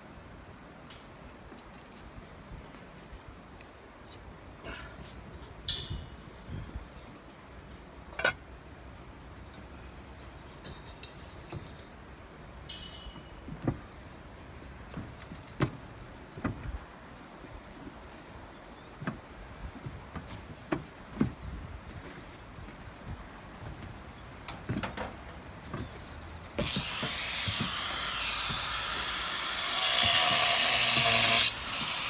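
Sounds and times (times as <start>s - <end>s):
low background noise: 0.0s - 32.0s
sharp knocks and clinks: 12.7s - 13.4s.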